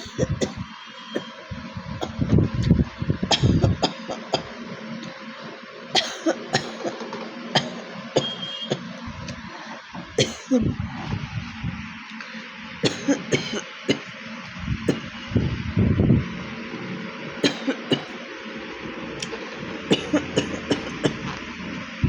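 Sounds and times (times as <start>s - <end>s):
person clearing throat: 0.0s - 0.6s, 3.3s - 4.5s, 6.0s - 7.0s, 10.2s - 10.7s, 12.9s - 14.1s, 17.4s - 18.2s, 19.9s - 21.2s
person coughing: 0.0s - 0.6s, 3.3s - 4.5s, 6.0s - 7.0s, 10.2s - 10.7s, 12.8s - 14.1s, 17.4s - 18.2s, 19.9s - 21.2s.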